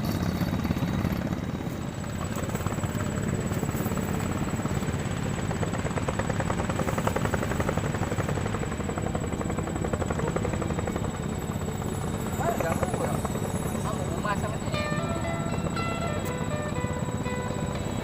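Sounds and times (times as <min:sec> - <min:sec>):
small engine running: 0:00.0 - 0:18.0.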